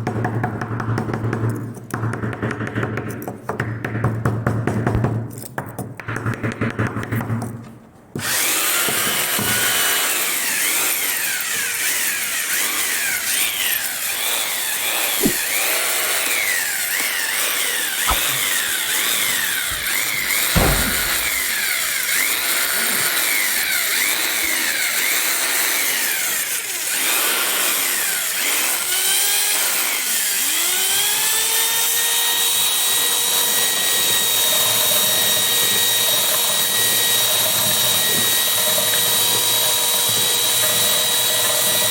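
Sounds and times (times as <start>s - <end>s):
power tool motor whining: 8.2s - 41.9s
sharp knocks: 15.2s - 15.6s, 18.0s - 22.3s.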